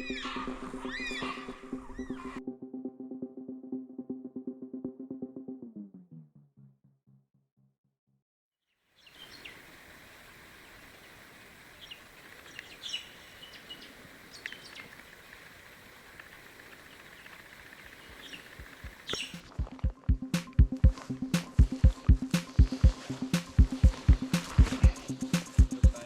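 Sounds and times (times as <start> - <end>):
music: 0.0 - 7.8, 19.3 - 26.0
short bird chirps: 9.0 - 9.7, 16.8 - 19.4
steady outdoor hiss: 9.0 - 26.0.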